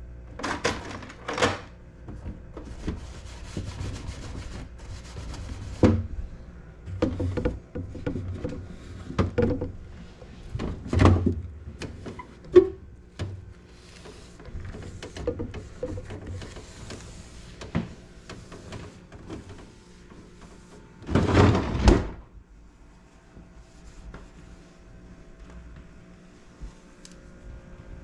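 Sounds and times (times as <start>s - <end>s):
rubbing and scrubbing: 2.6s - 6.1s, 13.6s - 21.0s
knocks and clunks of shelves: 5.2s - 6.2s, 6.8s - 13.5s, 14.1s - 22.4s.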